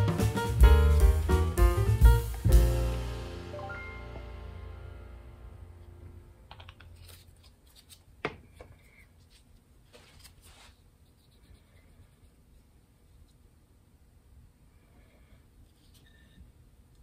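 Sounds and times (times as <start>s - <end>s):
music chord ringing out: 0.0s - 6.5s.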